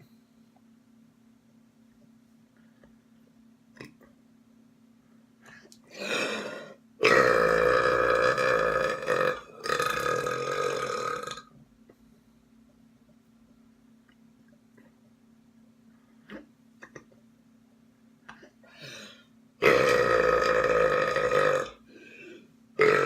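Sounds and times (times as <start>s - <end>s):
person burping: 5.9s - 11.5s, 16.3s - 17.2s, 19.6s - 21.8s, 22.8s - 23.0s.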